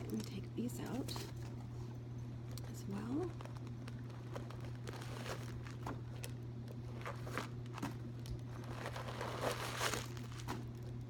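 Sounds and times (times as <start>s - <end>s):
packing material crinkling: 3.0s - 11.0s.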